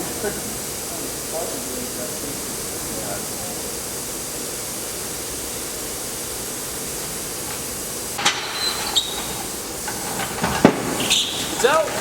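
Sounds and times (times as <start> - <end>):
background hiss: 0.0 - 12.0.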